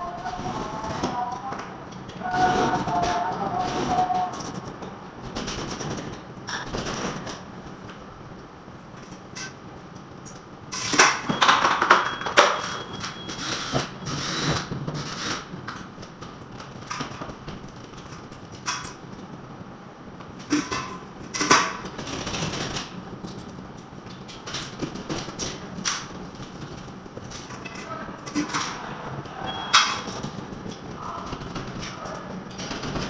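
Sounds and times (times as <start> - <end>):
hand tools knocking and scraping: 24.5 - 33.0.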